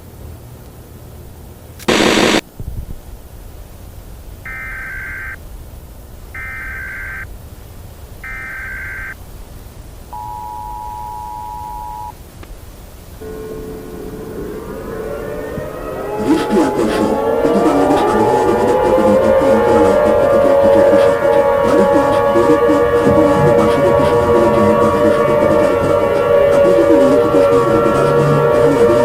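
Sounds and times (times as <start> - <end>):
loud burst of static: 1.8 - 2.4
chirping data bursts: 1.9 - 2.4, 4.5 - 5.4, 6.4 - 7.3, 8.2 - 9.2
siren winding up: 1.9 - 2.4
two-tone attention signal: 1.9 - 2.4, 10.2 - 12.1.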